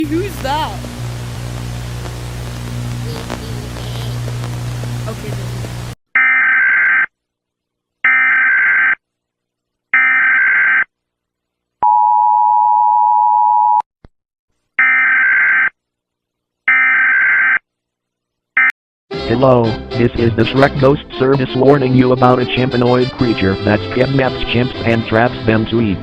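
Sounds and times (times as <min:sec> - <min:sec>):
buzzing data bursts: 0:00.0 - 0:06.0.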